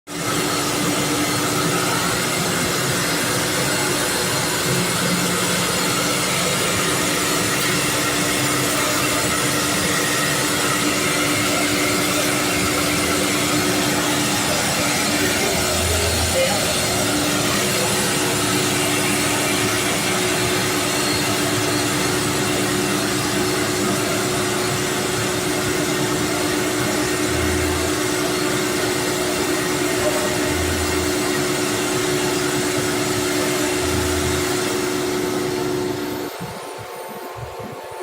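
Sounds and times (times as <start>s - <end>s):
router spindles whining: 0.2s - 38.0s.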